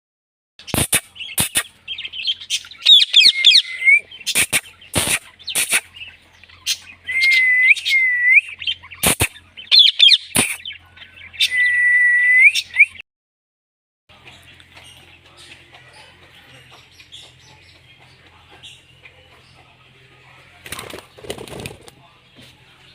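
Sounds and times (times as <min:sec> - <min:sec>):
parrot chirping and whistling: 0:02.8 - 0:05.8, 0:07.1 - 0:10.6.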